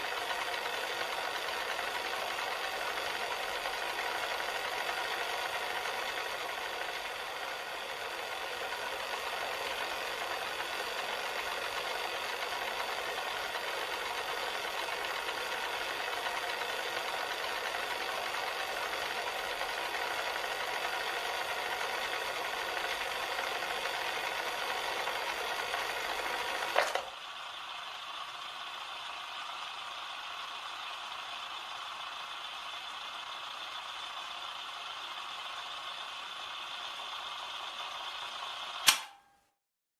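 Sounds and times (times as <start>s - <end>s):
tape mechanism whirring: 36.1s - 39.2s
sharp mechanism click: 38.8s - 39.3s.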